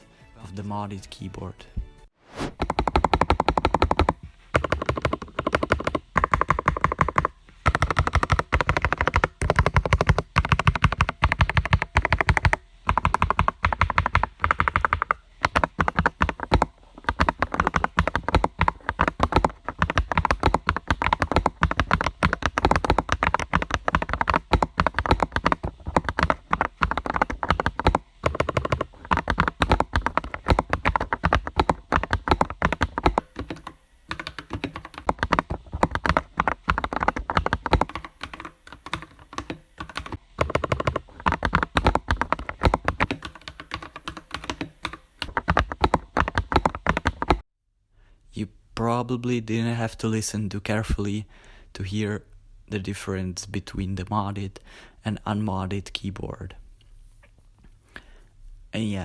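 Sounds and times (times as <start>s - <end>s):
mechanical keyboard typing: 2.5s - 47.4s.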